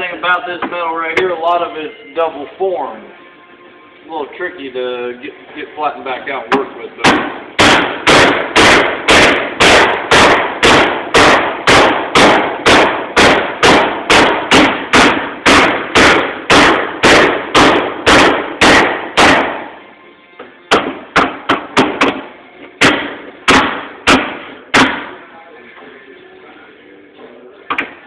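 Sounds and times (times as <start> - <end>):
hammer beating sheet metal: 6.5 - 19.8, 20.7 - 25.2.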